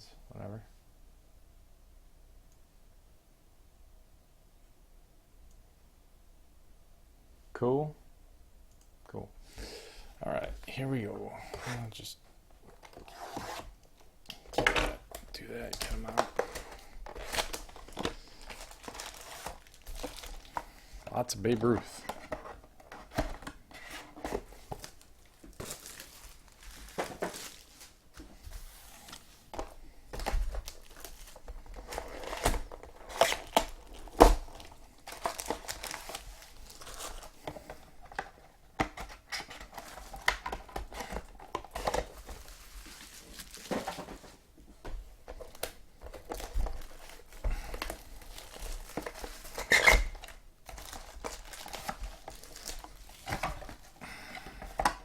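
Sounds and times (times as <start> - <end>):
plastic packaging crinkling and tearing: 14.3 - 23.6, 24.3 - 28.0, 30.1 - 38.2, 39.0 - 44.4, 45.3 - 54.0.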